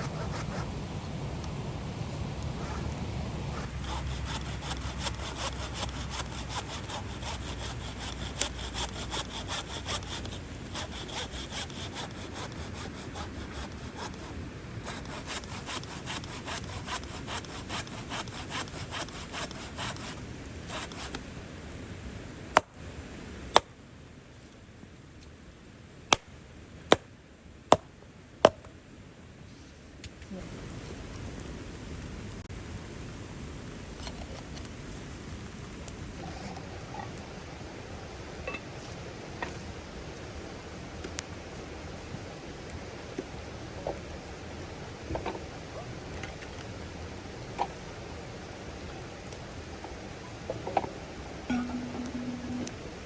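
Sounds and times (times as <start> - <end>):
wood being sawn by hand: 0.0 - 0.7, 2.5 - 21.2, 51.5 - 52.8.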